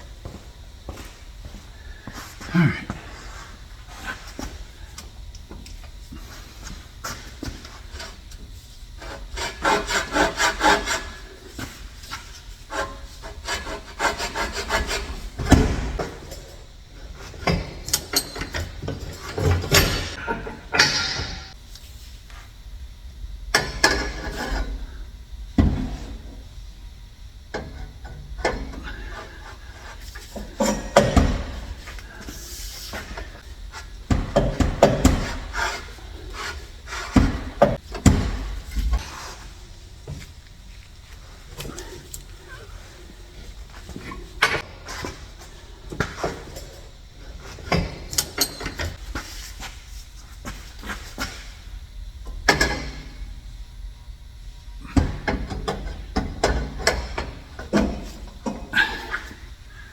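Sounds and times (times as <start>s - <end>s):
metal pipes scraping: 18.2s - 21.6s.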